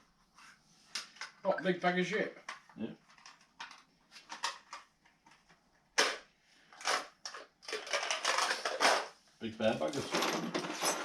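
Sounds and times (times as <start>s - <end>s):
tools clicking and clattering: 2.5s - 9.1s, 9.9s - 11.0s.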